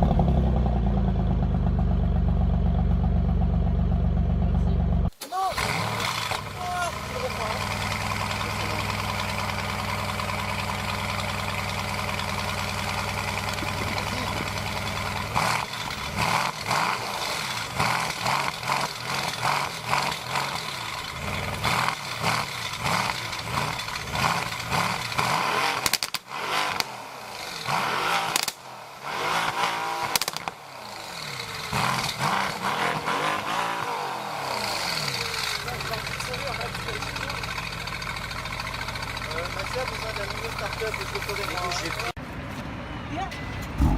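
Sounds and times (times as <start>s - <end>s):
car engine idling: 0.0s - 5.2s, 6.0s - 25.2s, 34.2s - 42.2s, 43.6s - 43.9s
car engine revving: 4.6s - 36.4s
exhaust cracks: 5.0s - 27.0s, 43.6s - 43.9s.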